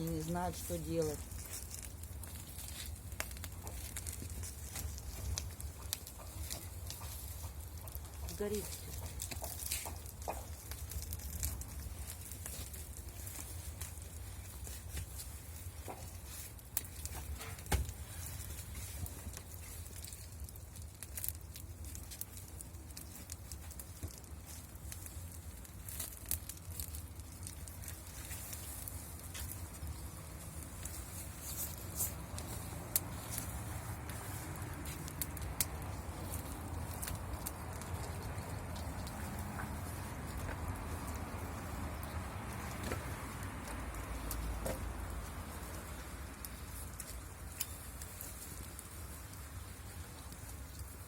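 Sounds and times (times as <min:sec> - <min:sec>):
bonfire crackling and popping: 0:00.0 - 0:51.0.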